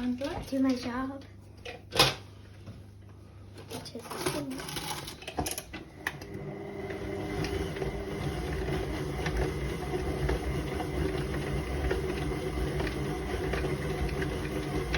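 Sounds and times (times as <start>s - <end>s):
stand mixer beating dough: 5.9s - 14.9s.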